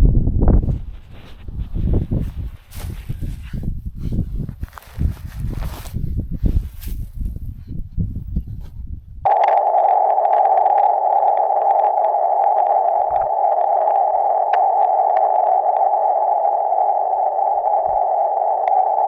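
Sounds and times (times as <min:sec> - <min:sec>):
radio receiver hiss: 0:09.3 - 0:19.0
static clicks: 0:09.3 - 0:19.0.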